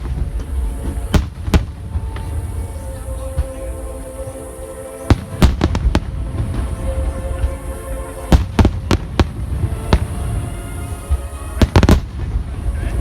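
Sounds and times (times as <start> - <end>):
firework shells bursting: 0.0 - 2.4, 5.1 - 7.6, 8.3 - 12.4
low rumble: 0.0 - 13.0
music with held notes: 0.0 - 13.0.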